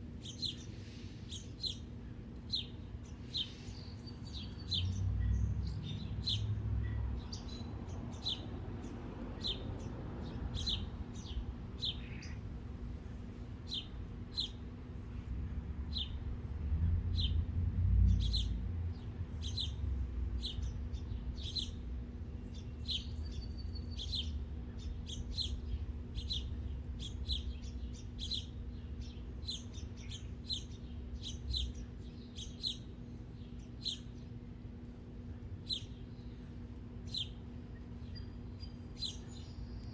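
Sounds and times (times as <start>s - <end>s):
faint steady hum: 0.0s - 39.9s
small birds chirping: 0.0s - 39.9s
low rumble: 15.2s - 22.1s.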